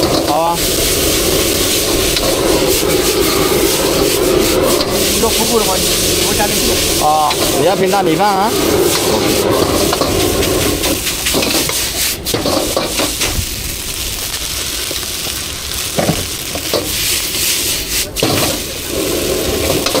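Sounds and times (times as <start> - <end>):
utensil scraping and knocking: 0.0 - 13.4
food sizzling in a pan: 0.0 - 20.0.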